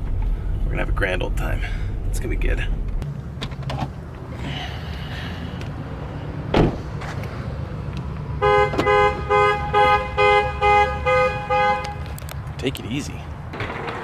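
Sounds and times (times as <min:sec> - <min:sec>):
low steady rumble: 0:00.0 - 0:03.2.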